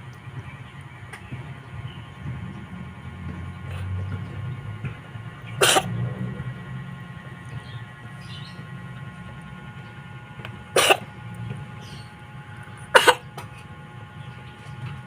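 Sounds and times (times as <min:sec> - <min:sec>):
steady low hum: 0:00.0 - 0:15.0
cat coughing: 0:05.6 - 0:06.0, 0:10.8 - 0:11.1, 0:12.9 - 0:13.3.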